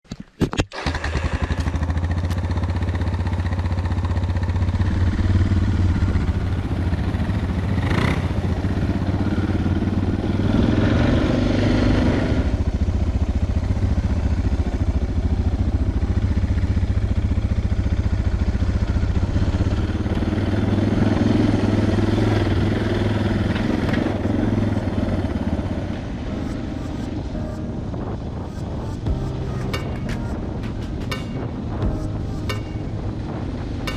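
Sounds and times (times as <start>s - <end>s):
motorcycle engine running: 1.0s - 26.2s
sharp knock: 28.5s - 33.9s.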